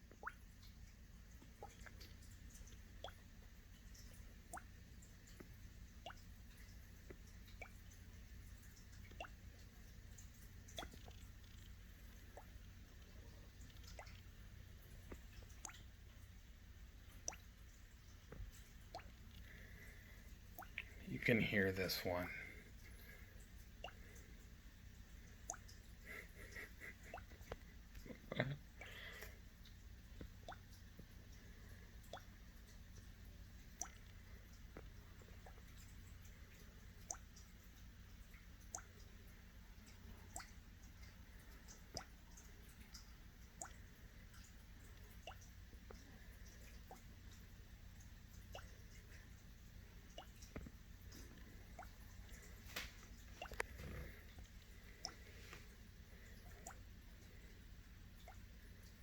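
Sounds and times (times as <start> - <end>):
gas bubbles popping in liquid: 0.0 - 0.4, 10.7 - 15.9, 50.1 - 55.3
low steady hum: 0.0 - 59.0.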